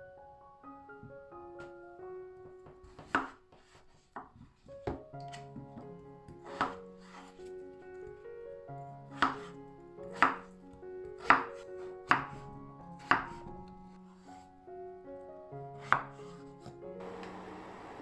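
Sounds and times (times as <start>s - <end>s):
background music: 0.0s - 3.8s, 4.8s - 18.0s
knife chopping on cutting board: 2.8s - 7.3s, 9.2s - 10.5s, 11.1s - 13.6s, 15.8s - 16.8s.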